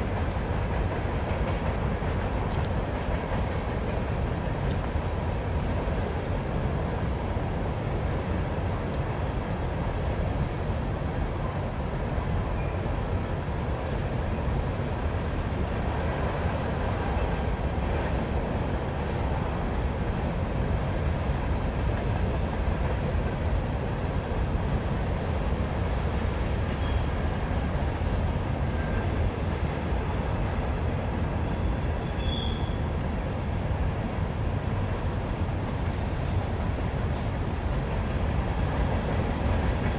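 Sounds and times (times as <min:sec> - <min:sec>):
train wheels rumbling on rails: 0:00.0 - 0:39.9
faint rail clicks: 0:00.1 - 0:05.4.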